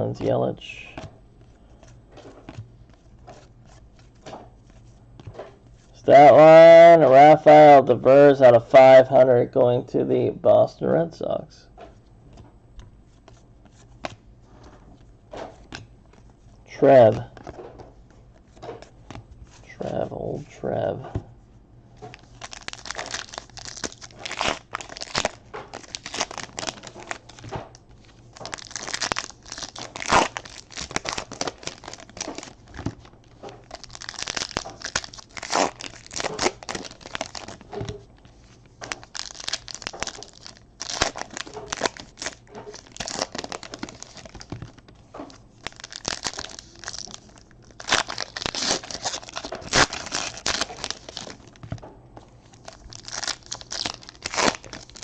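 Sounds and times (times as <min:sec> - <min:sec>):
wrapper crinkling and rustling: 0:22.0 - 0:51.8, 0:52.4 - 0:55.0
card pack wrappers tearing: 0:22.1 - 0:27.5, 0:28.4 - 0:37.7, 0:38.8 - 0:44.8, 0:45.6 - 0:51.7, 0:52.5 - 0:55.0.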